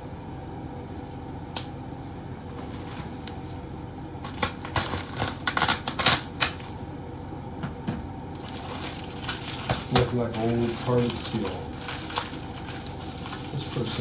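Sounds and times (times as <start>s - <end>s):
click: 1.5s - 1.7s
package wrapping crinkling: 4.2s - 6.8s, 8.3s - 14.0s.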